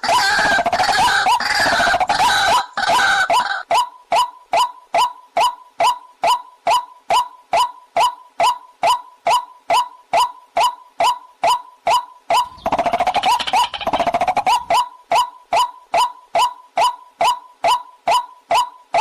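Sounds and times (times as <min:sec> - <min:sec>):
bird rattling trills: 0:12.3 - 0:14.8
bird knocking call: 0:12.3 - 0:14.9.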